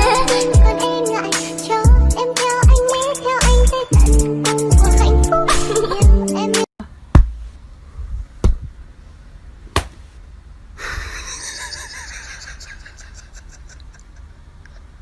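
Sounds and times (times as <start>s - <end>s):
sharp knocks: 7.1s - 7.5s, 8.4s - 8.7s.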